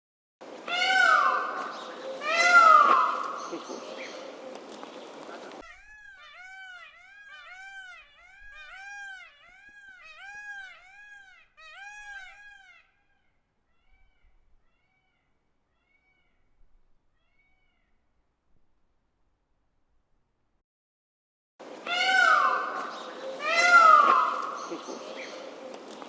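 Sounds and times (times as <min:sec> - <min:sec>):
peacock calling: 0:00.4 - 0:16.5, 0:21.6 - 0:26.0.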